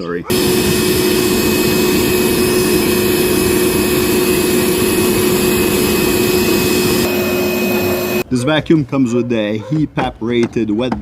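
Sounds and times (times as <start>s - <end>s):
vacuum motor whine: 0.3s - 8.2s.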